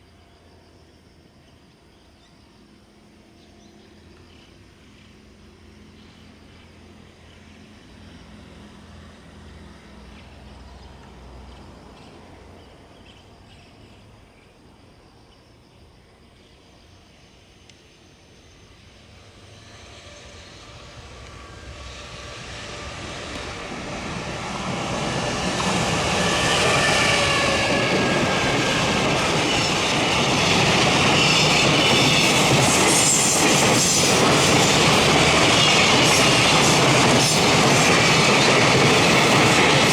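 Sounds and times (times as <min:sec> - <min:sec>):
rush of train wheels on rail: 0:17.8 - 0:39.9.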